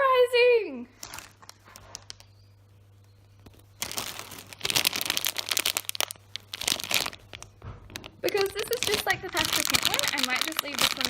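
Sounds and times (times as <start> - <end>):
plastic packaging crinkling: 0.9 - 2.4, 3.4 - 11.0.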